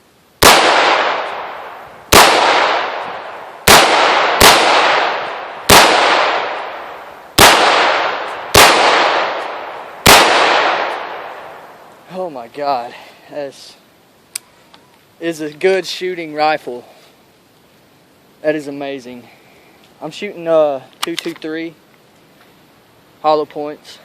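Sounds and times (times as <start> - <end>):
rifle shots echoing: 0.4 - 12.0.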